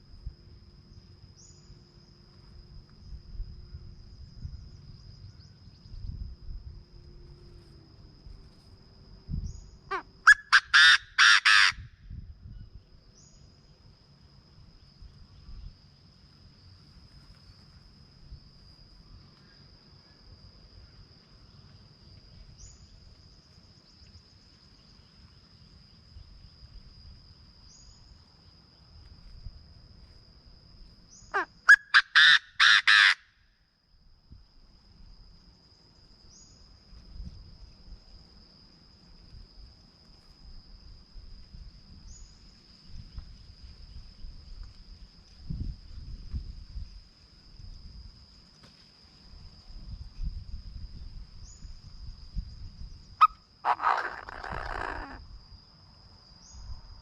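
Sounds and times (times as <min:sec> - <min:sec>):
high insect whine: 0:00.0 - 0:57.0
bird calling loud notes: 0:09.9 - 0:11.8, 0:31.4 - 0:33.2, 0:53.6 - 0:55.2.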